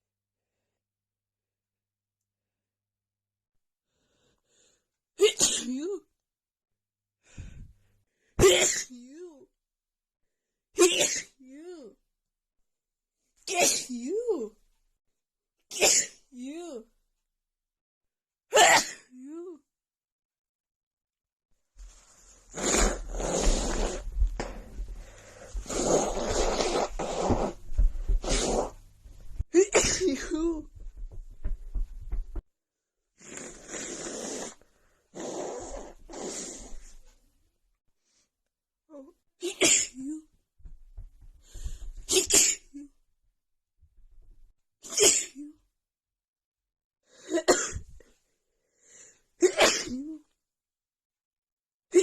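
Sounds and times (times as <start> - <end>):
person sneezing: 5.2 - 6.0, 8.4 - 9.0, 10.8 - 11.4, 13.5 - 13.9, 15.7 - 16.3, 18.5 - 19.2, 22.5 - 24.8, 25.6 - 28.8, 29.6 - 30.7, 39.4 - 40.2, 42.1 - 42.8, 44.8 - 45.5, 47.2 - 48.0, 49.4 - 50.3
congested nose breathing: 22.0 - 28.8, 33.2 - 36.9.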